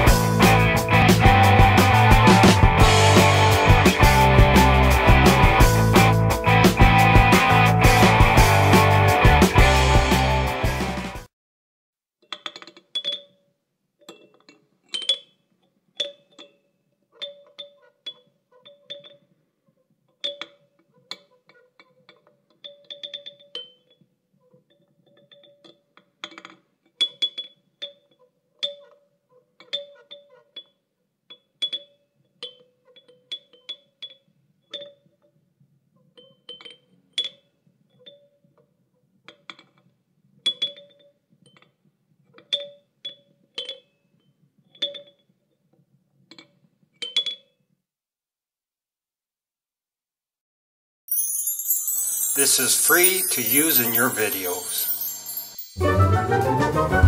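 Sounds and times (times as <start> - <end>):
sharp ringing clicks and clanks: 51.1 - 55.8.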